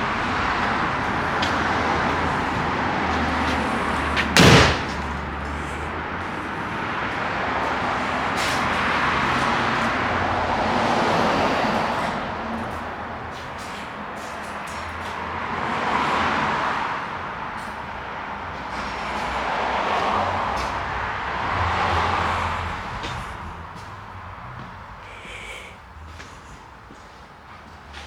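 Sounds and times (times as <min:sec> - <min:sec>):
street traffic noise: 0:00.0 - 0:28.0
loud sharp knock: 0:04.2 - 0:05.2.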